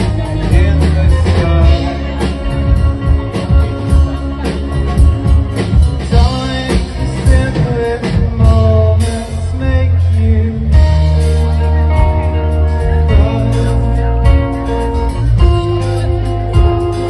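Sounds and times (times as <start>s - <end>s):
person singing: 0.0s - 17.0s
rock band playing: 0.0s - 17.0s.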